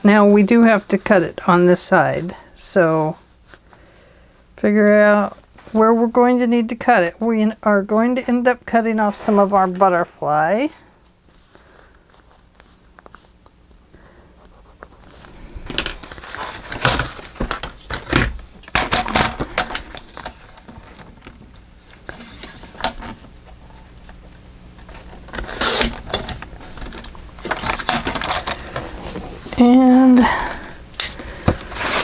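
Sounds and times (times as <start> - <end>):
paper rustling and crinkling: 14.4 - 30.4, 31.0 - 32.0.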